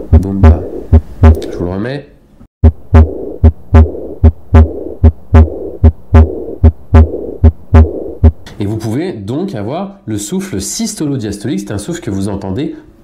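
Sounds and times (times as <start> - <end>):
heartbeat through stethoscope: 0.0 - 1.4, 2.6 - 8.4
whooshing heart murmur: 2.6 - 8.4.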